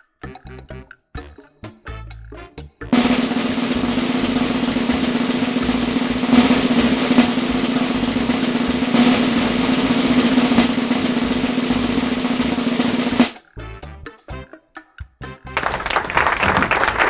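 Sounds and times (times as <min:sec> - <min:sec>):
snare drum roll: 0:03.0 - 0:13.4, 0:15.6 - 0:17.0.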